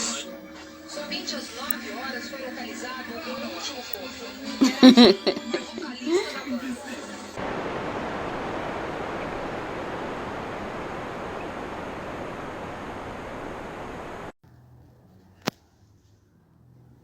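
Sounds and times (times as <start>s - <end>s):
steady hiss: 6.9s - 14.3s.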